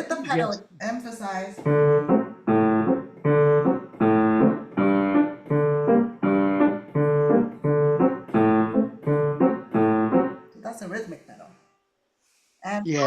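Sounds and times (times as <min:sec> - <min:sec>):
piano playing chords: 0:01.6 - 0:10.6.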